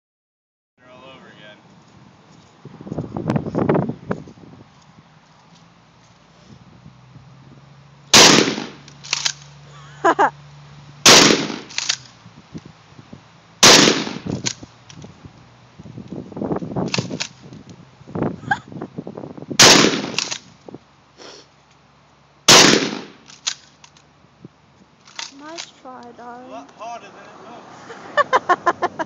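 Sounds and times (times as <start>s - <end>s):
shotgun blasts: 8.1s - 9.4s, 11.0s - 12.0s, 13.6s - 14.5s, 19.6s - 20.4s, 22.5s - 23.3s
small clicks and knocks: 23.2s - 24.1s, 24.8s - 25.8s.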